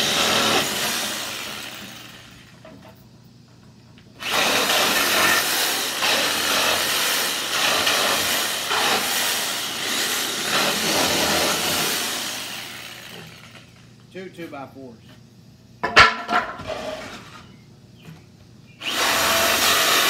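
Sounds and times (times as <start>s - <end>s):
reciprocating saw cutting nails: 4.2s - 13.7s, 18.8s - 20.0s.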